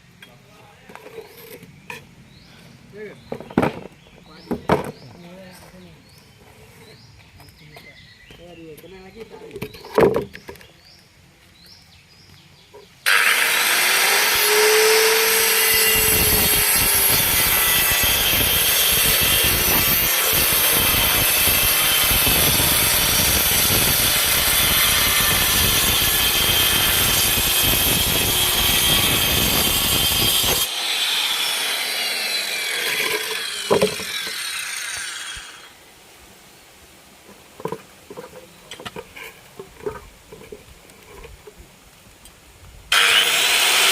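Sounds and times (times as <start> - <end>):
circular saw cutting plywood: 13.0 - 35.7, 42.9 - 43.9
saw blade winding down: 13.0 - 35.7, 42.9 - 43.9.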